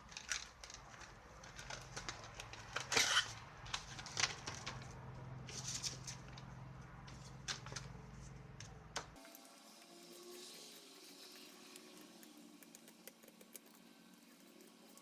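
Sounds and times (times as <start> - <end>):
small hard parts clicking: 9.2 - 15.0.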